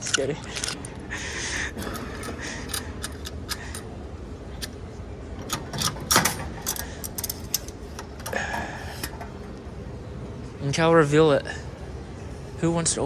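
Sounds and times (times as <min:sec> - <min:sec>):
capsule vending machine clacking: 0:01.6 - 0:10.0.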